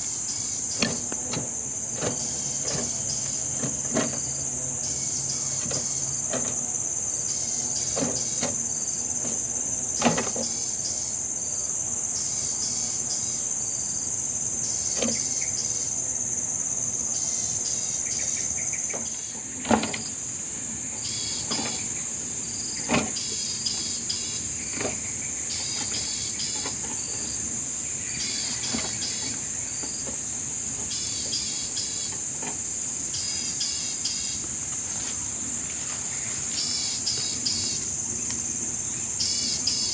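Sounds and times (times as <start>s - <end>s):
insect chorus chirping: 0.0s - 39.9s.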